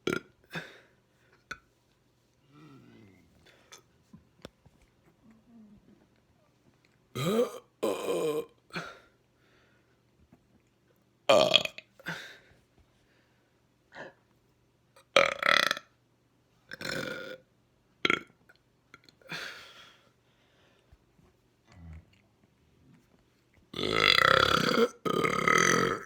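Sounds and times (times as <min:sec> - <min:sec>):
person burping: 0:00.0 - 0:00.9, 0:07.2 - 0:09.0, 0:11.3 - 0:12.2, 0:15.0 - 0:15.9, 0:16.7 - 0:17.4, 0:18.0 - 0:18.4, 0:23.7 - 0:26.0.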